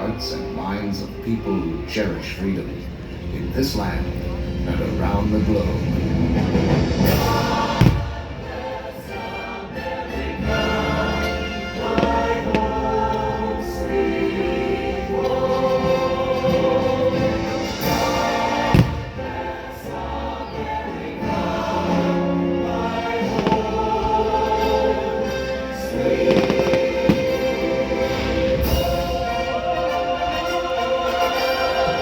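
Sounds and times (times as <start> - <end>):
choir singing with music: 0.0 - 32.0
firework bangs: 7.0 - 8.6, 11.8 - 13.1, 16.4 - 19.5, 23.1 - 29.5.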